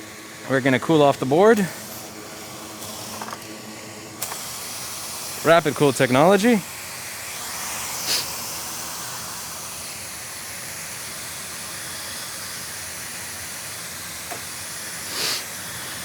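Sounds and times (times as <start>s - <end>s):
air blowing hiss: 0.0s - 16.0s
puff of air: 7.3s - 8.6s, 14.4s - 16.0s.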